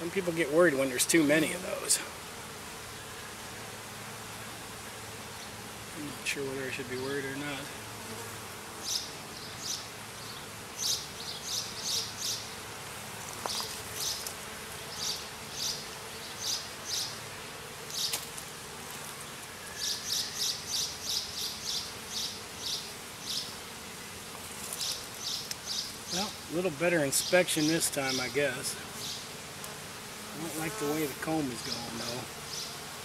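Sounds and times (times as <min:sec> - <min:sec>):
honey bees buzzing: 0:00.0 - 0:33.0.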